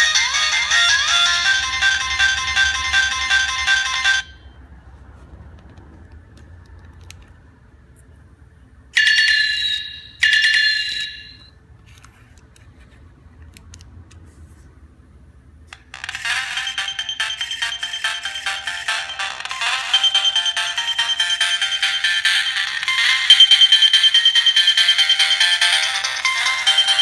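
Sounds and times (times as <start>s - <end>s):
ringtone of quick repeated notes: 0.0s - 4.5s, 16.0s - 27.0s
phone ringtone melody: 0.0s - 4.6s, 9.0s - 11.5s, 15.9s - 27.0s.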